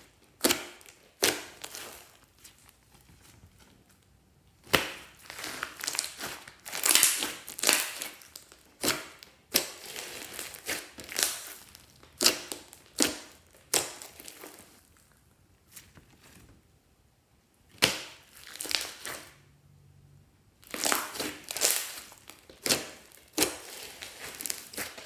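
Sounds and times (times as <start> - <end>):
slime squelching and popping: 0.0 - 3.1, 4.6 - 15.2, 17.7 - 19.4, 20.6 - 25.0.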